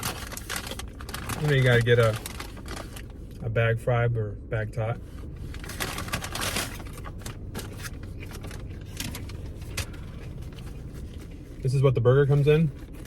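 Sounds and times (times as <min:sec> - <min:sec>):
paper bag rustling and crinkling: 0:00.0 - 0:03.3, 0:05.0 - 0:11.7, 0:12.3 - 0:13.0
low steady hum: 0:00.0 - 0:13.0.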